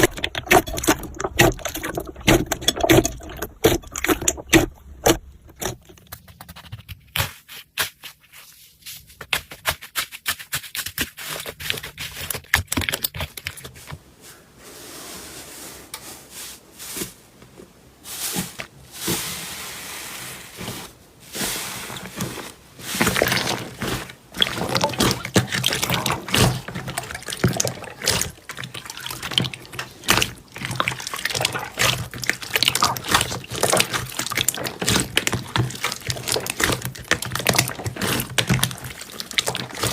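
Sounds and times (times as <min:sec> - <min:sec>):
slime squishing with wet clicks: 0:24.4 - 0:39.9.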